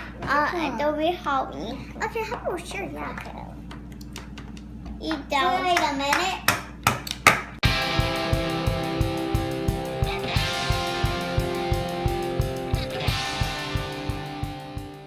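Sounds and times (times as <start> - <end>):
background music with steady beat: 7.6 - 15.0.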